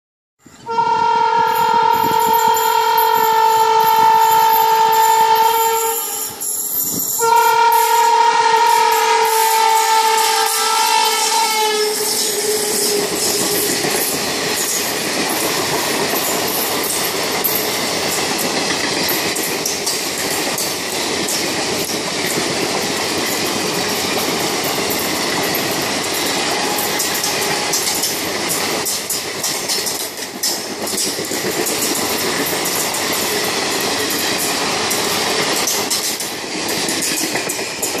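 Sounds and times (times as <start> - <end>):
train horn: 0.5 - 6.4, 7.2 - 14.1, 26.3 - 28.0
train wheels clattering on rails: 1.9 - 38.0.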